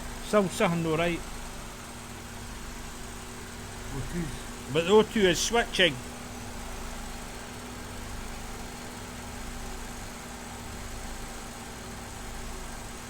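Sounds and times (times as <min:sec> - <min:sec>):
steady hum: 0:00.0 - 0:10.1
car engine idling: 0:00.0 - 0:13.0.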